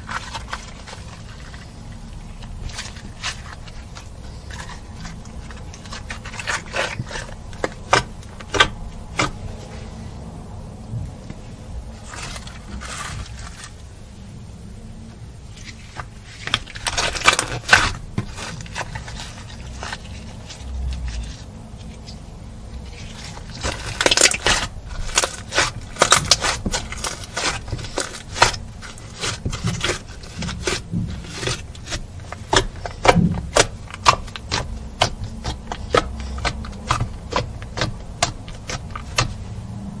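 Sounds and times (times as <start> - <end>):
slime clicking and popping: 30.6 - 39.4.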